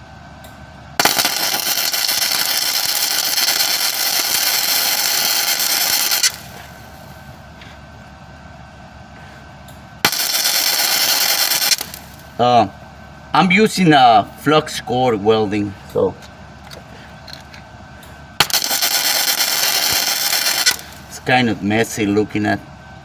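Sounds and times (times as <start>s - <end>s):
welder arc crackling: 1.0s - 7.5s, 10.0s - 12.6s, 18.4s - 21.7s.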